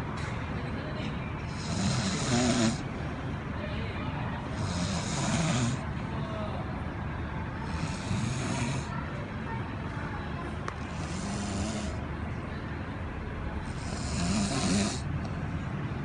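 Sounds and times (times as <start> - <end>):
man snoring: 1.5 - 2.8, 4.6 - 5.8, 7.6 - 8.9, 10.9 - 12.0, 13.7 - 15.0.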